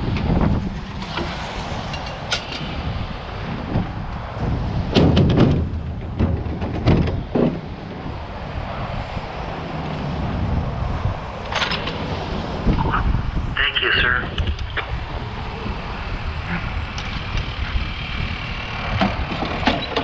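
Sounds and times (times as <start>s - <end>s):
low rumble of vehicle: 0.0s - 20.0s
sharp knocks and bangs: 0.3s - 7.8s.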